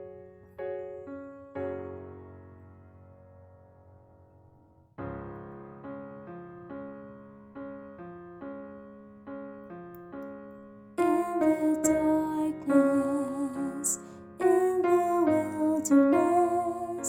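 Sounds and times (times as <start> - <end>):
piano keyboard chords: 0.0 - 17.0
woman singing with vibrato: 11.0 - 17.0.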